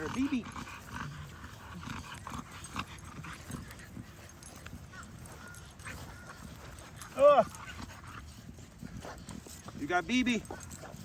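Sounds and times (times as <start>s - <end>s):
puppies whining: 0.0s - 11.0s.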